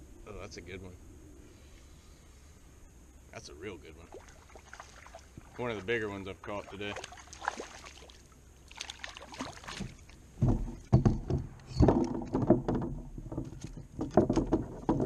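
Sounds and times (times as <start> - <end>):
knocks against kayak hull: 9.7 - 15.0.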